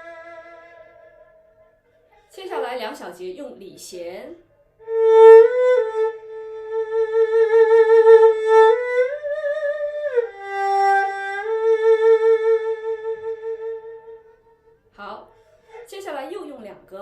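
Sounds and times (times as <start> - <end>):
erhu playing slow phrase: 0.0 - 1.8, 4.8 - 14.6.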